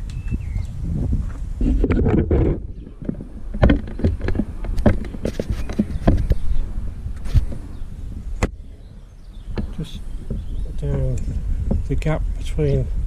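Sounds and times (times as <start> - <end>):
steady low rumble: 5.8 - 13.0.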